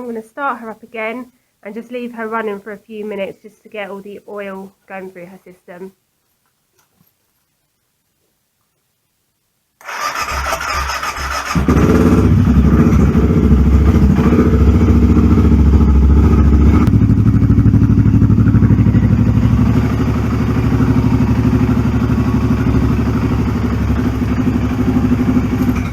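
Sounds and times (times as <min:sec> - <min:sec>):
motorcycle starter cranking: 0:09.8 - 0:14.6
motorcycle engine idling: 0:10.9 - 0:25.9.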